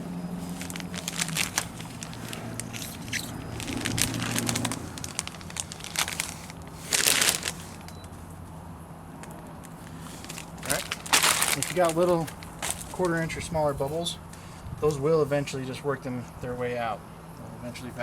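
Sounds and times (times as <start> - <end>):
low hum: 0.0 - 11.6
loud rustle: 0.3 - 7.9, 9.8 - 13.3
film and tape crinkling: 0.4 - 8.0, 9.2 - 14.0.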